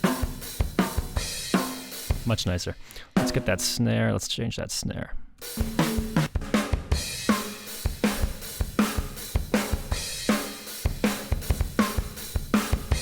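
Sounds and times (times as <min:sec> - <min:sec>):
programmed drum groove: 0:00.0 - 0:04.0, 0:05.4 - 0:13.0.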